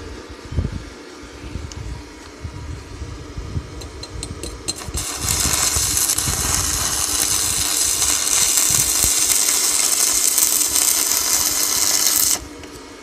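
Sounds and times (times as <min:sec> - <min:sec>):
welding arc crackling sizzle: 0:03.8 - 0:13.0.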